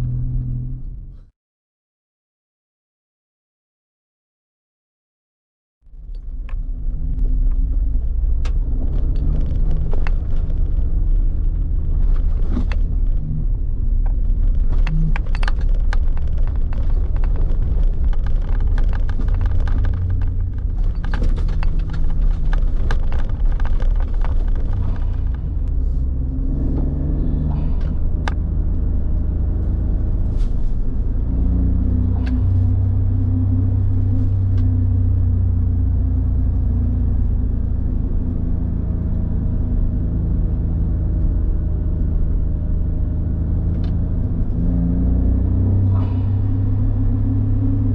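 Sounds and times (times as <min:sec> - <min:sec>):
car engine humming: 0:00.0 - 0:01.2, 0:05.9 - 0:47.9
clicks and knocks: 0:14.0 - 0:25.4.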